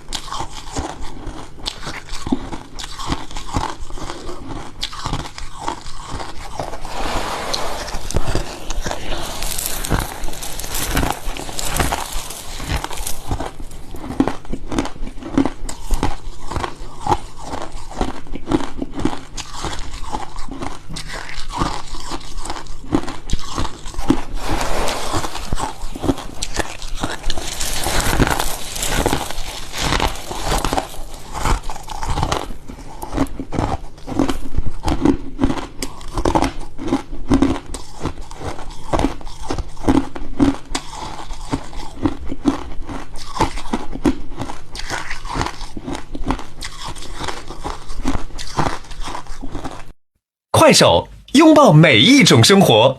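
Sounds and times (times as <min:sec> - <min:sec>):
frost being chewed crunching: 0:00.0 - 0:06.9, 0:07.8 - 0:50.0.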